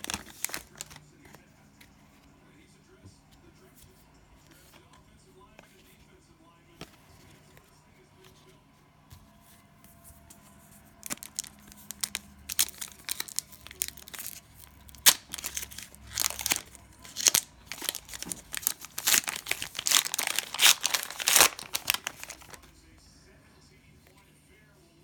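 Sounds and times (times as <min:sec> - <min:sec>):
cellophane wrapper tearing and crinkling: 0:00.0 - 0:01.0, 0:11.0 - 0:22.6.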